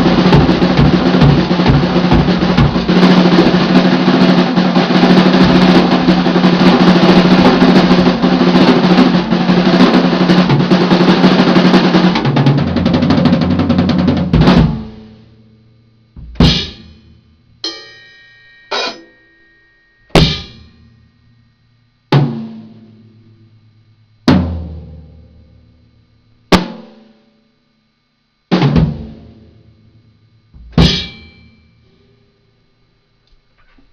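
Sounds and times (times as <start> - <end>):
accented drum hits ringing: 0.0 - 15.1, 16.2 - 23.3, 26.5 - 27.1, 28.5 - 32.4
drum kit fills and rolls: 0.0 - 15.5, 16.1 - 19.2, 20.0 - 21.0, 22.1 - 23.3, 24.2 - 25.8, 28.5 - 32.1.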